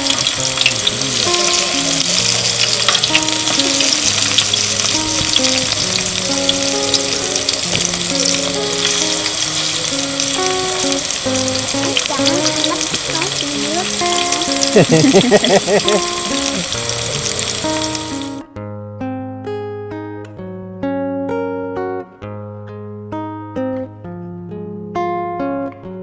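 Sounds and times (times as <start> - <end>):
food sizzling in a pan: 0.0 - 18.4
slow background music: 0.0 - 20.6.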